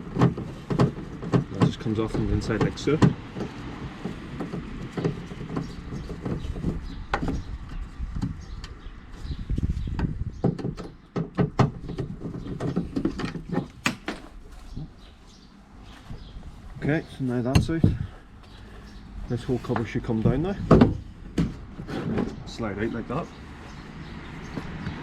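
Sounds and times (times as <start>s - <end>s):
clicks and knocks on plastic trim: 0.1s - 7.5s.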